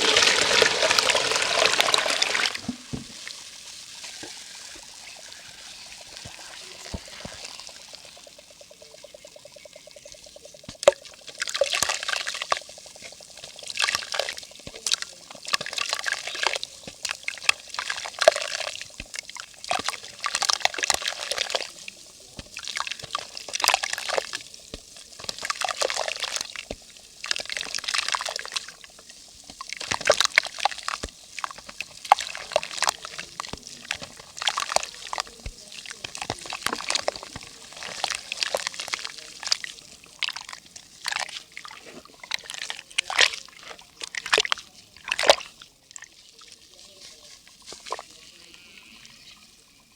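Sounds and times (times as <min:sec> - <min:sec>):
mud splashing and crumbling: 0:00.0 - 0:08.4, 0:10.7 - 0:48.4
water fizzing on dry mud: 0:00.0 - 0:49.9.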